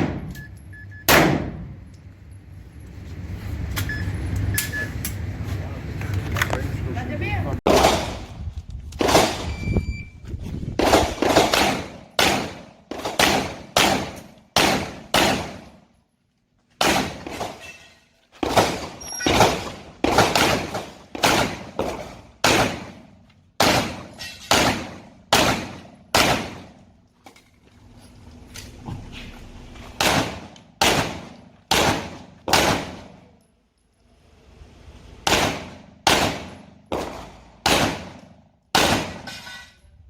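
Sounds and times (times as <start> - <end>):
pistol shots echoing: 1.1 - 1.7, 10.8 - 15.6, 18.4 - 26.8, 30.0 - 33.2, 35.2 - 39.3.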